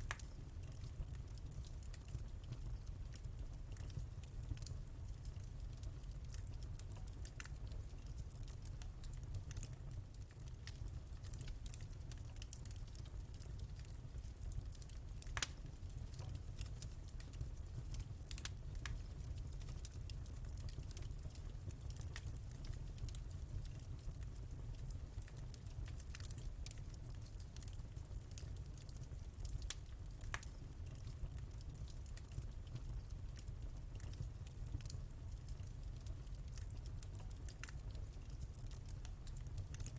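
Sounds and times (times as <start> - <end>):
wood fire crackling: 0.0 - 39.9.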